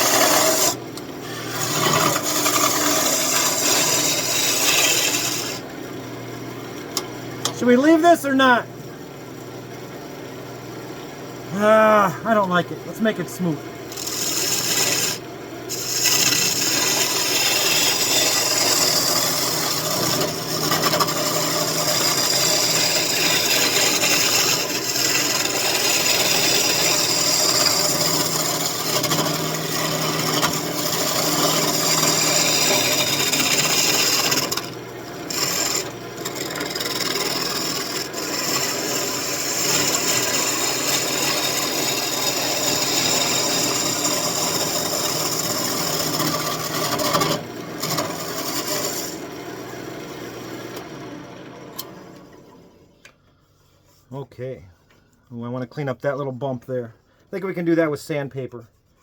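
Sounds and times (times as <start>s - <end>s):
lathe tool rasping wood: 0.0s - 5.7s, 11.5s - 50.9s.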